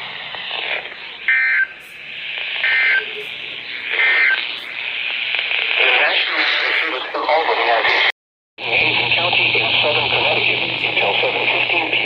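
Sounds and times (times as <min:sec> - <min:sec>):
warbling digital data tones: 0:00.0 - 0:07.1
radio static: 0:00.0 - 0:12.0.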